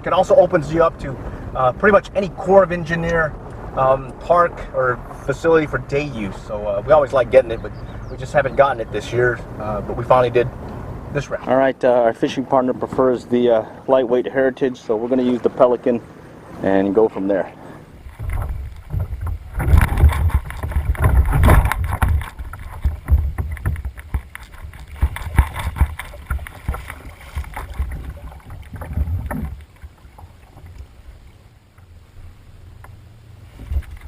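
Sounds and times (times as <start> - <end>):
water splashing: 0.0 - 34.0
knocks against plastic hull: 18.1 - 29.6.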